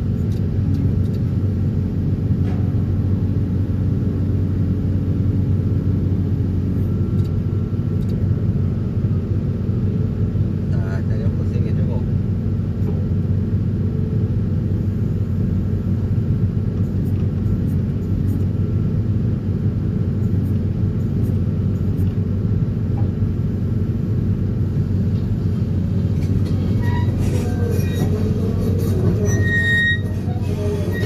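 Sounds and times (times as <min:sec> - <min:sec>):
high squeals: 0:26.6 - 0:31.0.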